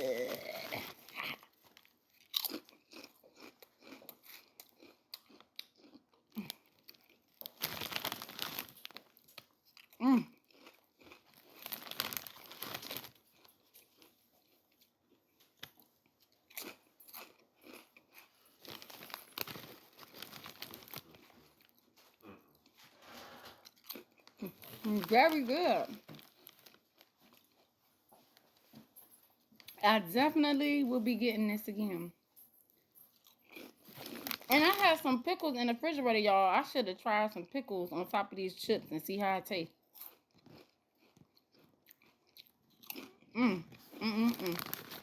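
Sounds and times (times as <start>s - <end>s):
person crunching potato chips: 0.0s - 22.8s, 23.6s - 27.7s, 33.2s - 35.1s, 39.8s - 45.0s.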